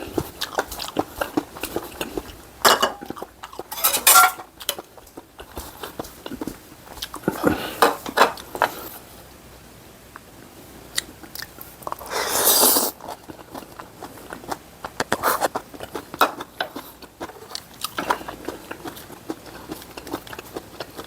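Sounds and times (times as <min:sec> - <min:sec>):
person chewing with mouth smacks: 0:00.0 - 0:02.4, 0:10.9 - 0:21.0
loud slurp: 0:12.1 - 0:13.0.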